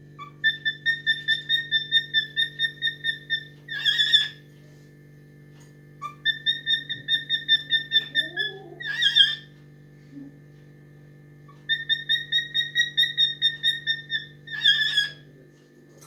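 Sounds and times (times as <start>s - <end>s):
cockatiel whistling: 11.7s - 15.2s.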